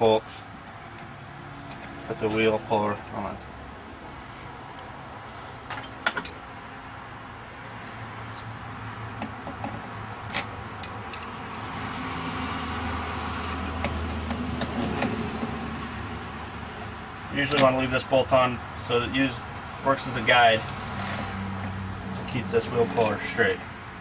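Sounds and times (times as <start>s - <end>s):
metal tool clicks and clinks: 2.8s - 3.5s, 10.3s - 12.3s, 13.4s - 15.2s, 21.4s - 21.8s, 22.8s - 23.7s.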